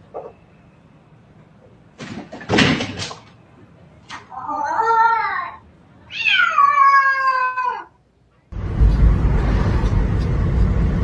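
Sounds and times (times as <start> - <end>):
cat meowing: 4.3 - 8.0
car road noise rumble: 8.5 - 11.0.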